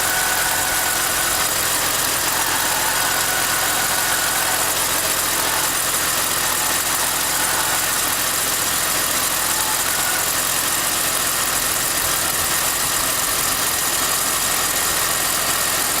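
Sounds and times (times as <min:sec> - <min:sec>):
whining chirping noise: 0:00.0 - 0:11.0
car engine idling: 0:00.0 - 0:16.0.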